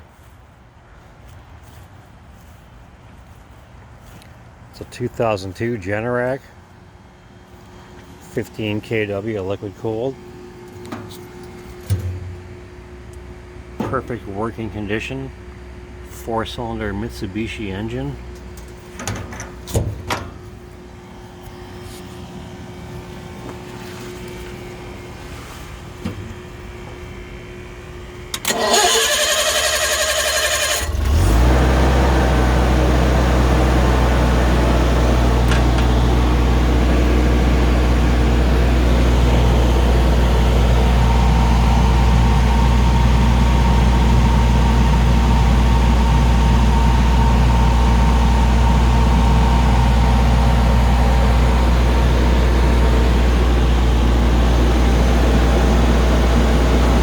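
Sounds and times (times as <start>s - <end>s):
generator engine running: 4.5s - 57.0s
starter cranking engine: 28.3s - 31.6s.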